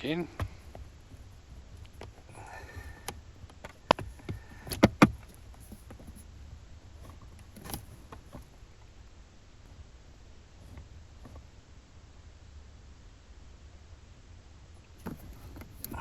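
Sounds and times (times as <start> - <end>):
plastic parts knocking: 0.2 - 6.2
plastic parts clicking into place: 2.8 - 6.2.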